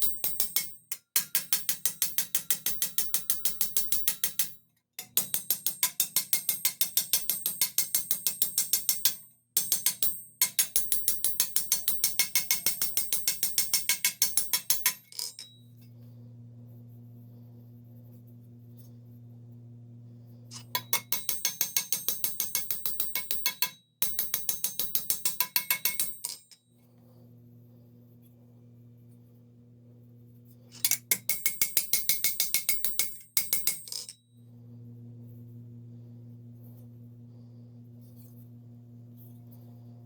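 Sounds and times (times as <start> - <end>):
hammer striking steel plate: 0.0 - 15.5, 20.6 - 26.6, 30.8 - 34.2
steady low hum: 14.1 - 22.3, 26.0 - 40.0.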